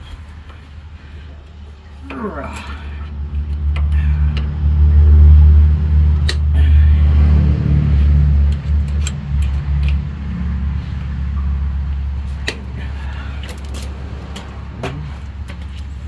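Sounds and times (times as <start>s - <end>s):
engine low rumble: 0.0s - 16.0s.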